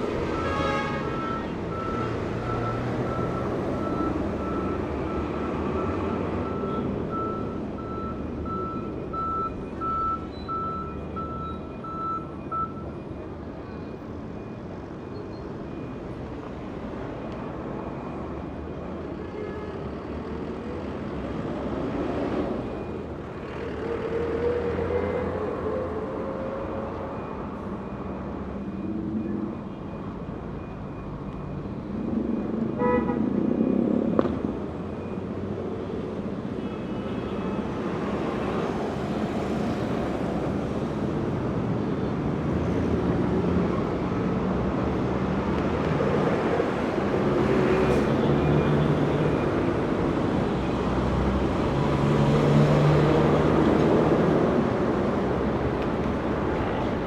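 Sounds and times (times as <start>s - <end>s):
vehicle engines passing: 0.0s - 19.2s, 19.8s - 57.0s.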